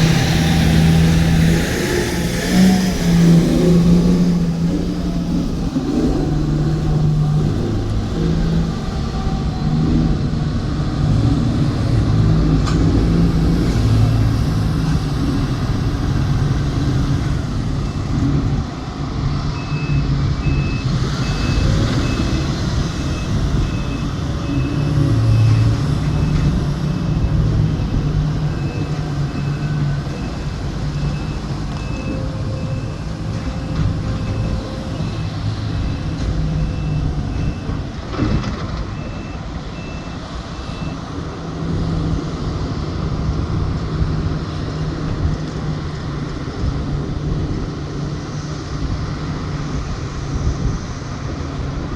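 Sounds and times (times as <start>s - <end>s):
large diesel engines under load: 0.0s - 51.9s
reversing alarm beeping: 19.5s - 41.0s.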